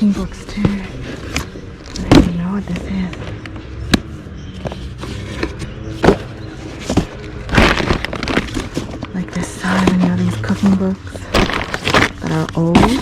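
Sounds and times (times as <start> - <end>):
books knocking in boxes: 0.3 - 1.0, 2.0 - 2.5, 4.6 - 13.0.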